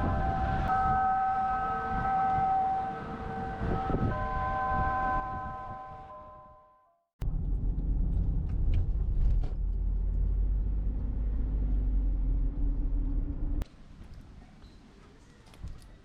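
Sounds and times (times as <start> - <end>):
car road rumble: 7.2 - 13.6.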